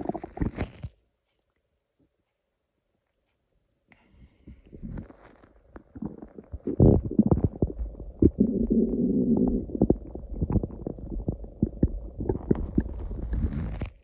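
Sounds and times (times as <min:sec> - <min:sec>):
stomach growling: 0:00.0 - 0:00.9, 0:04.5 - 0:14.0.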